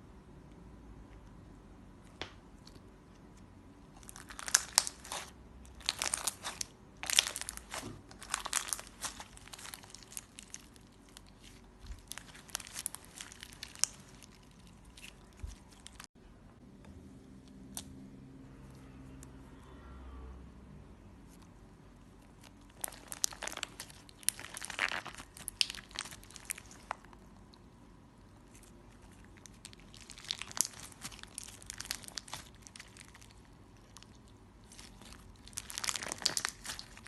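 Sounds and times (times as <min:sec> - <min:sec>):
slime crackling and popping: 0:03.9 - 0:16.1, 0:22.2 - 0:37.0.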